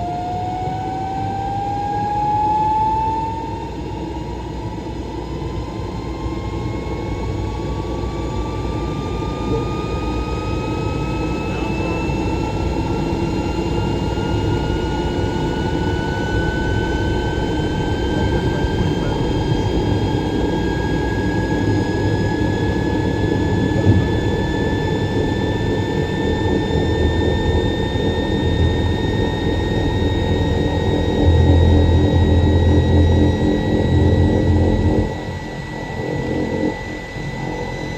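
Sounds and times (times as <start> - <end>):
high machine whine: 0.0 - 37.9
machine mechanical hum: 0.0 - 37.9
short knock: 23.8 - 24.5.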